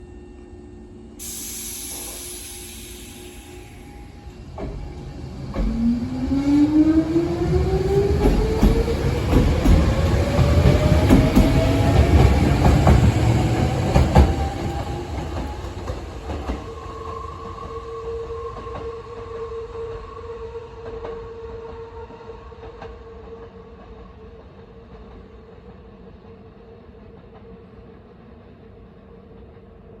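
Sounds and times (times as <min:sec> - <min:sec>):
electric train motors whining: 0:01.2 - 0:16.1
train rumble: 0:01.2 - 0:30.0.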